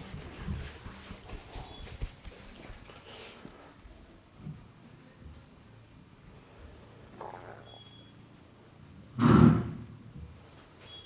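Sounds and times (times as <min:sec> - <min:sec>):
hands rubbing scalp and hair: 0:00.0 - 0:04.9.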